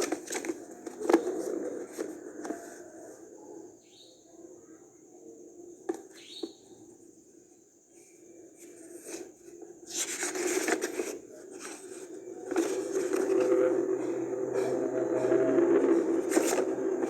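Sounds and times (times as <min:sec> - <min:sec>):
rustling and scraping of packaging: 0:00.0 - 0:02.9, 0:08.6 - 0:17.0.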